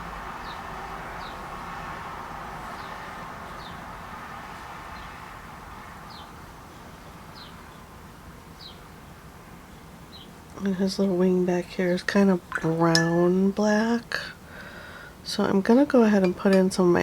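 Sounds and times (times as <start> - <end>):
small bird chirping: 8.6 - 8.9.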